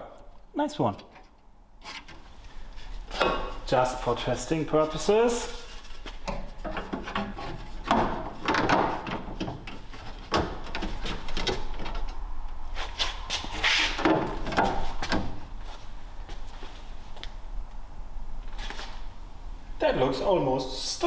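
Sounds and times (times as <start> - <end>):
steady low hum: 0.0 - 21.0
plastic brackets knocking on metal: 6.3 - 11.9.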